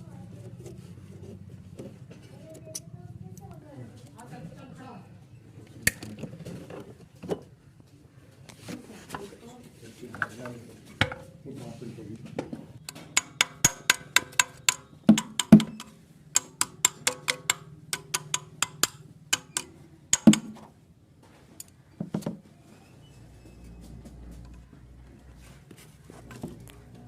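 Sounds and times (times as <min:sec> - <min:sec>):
rapid sharp knocks: 0:12.9 - 0:20.6.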